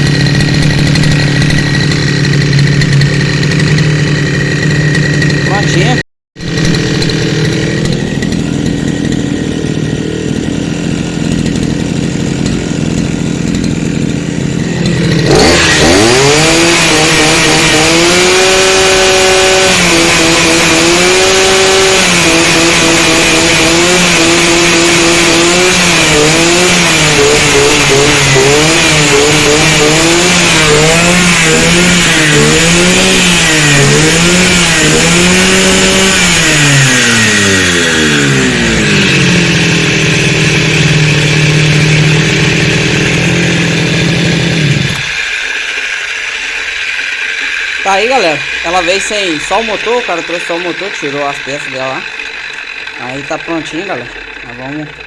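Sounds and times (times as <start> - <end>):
brush cutter engine revving: 0.0 - 55.0.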